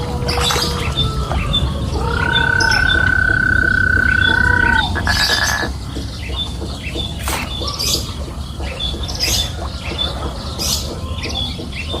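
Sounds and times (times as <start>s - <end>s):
bird-like squawks and chirps: 0.3s - 5.7s.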